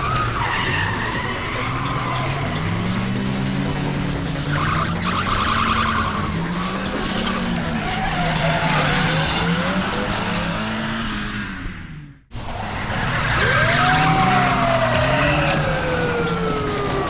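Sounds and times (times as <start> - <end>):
tyres squealing: 0.0 - 9.8
car engine revving: 0.0 - 17.0.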